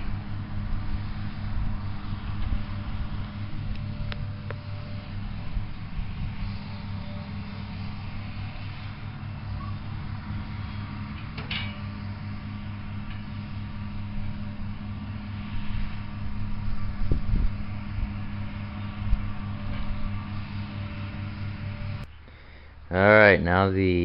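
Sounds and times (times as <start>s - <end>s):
steady machine hum: 0.0s - 24.0s.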